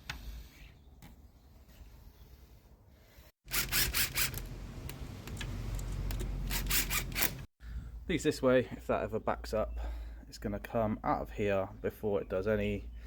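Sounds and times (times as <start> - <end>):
saw cutting pipe: 3.4 - 4.6, 6.4 - 7.5.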